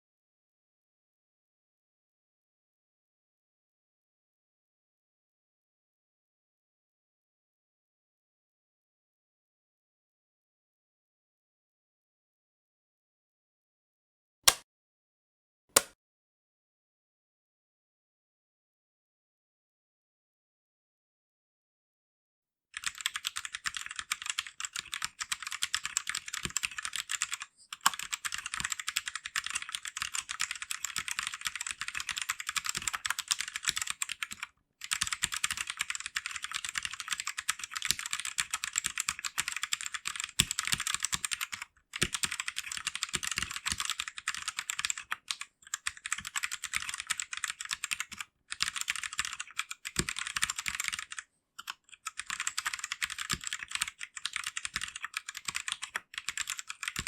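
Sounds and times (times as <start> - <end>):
fast typing on mechanical keyboard: 22.8 - 57.0.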